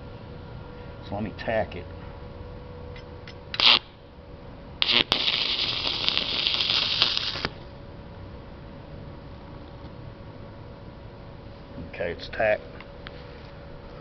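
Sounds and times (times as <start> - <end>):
crackling welding arc: 3.5 - 4.0, 4.8 - 7.6.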